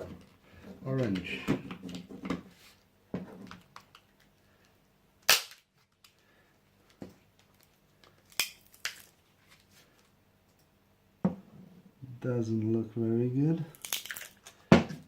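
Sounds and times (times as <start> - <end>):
plastic casing cracking apart: 13.7 - 14.7.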